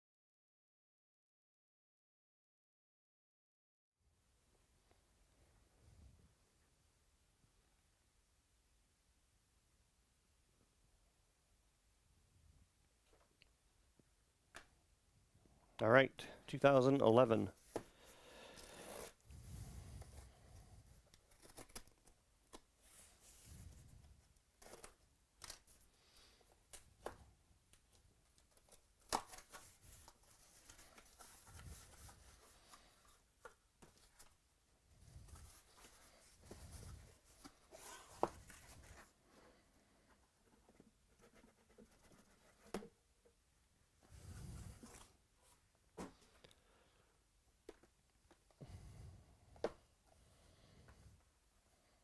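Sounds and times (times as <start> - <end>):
packaging tearing and rustling: 21.2 - 22.1.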